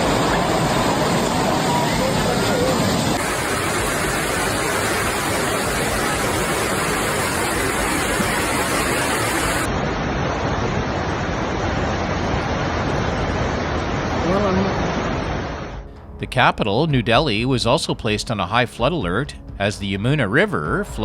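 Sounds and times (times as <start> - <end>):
floodwater rushing: 0.0 - 15.9.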